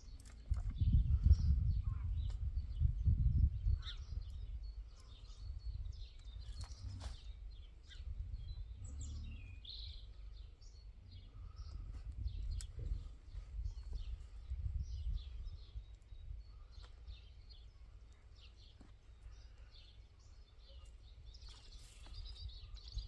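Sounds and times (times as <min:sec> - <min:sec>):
small birds chirping: 0:00.0 - 0:23.0
low rumbling noise: 0:00.6 - 0:18.0.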